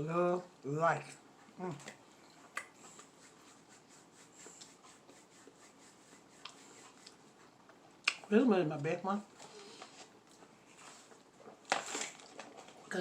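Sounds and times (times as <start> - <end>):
rustling: 9.3 - 13.0.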